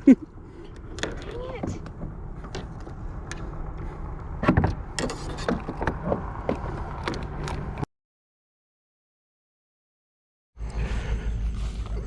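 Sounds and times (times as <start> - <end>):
steady low rumble: 0.0 - 5.3, 10.6 - 12.0.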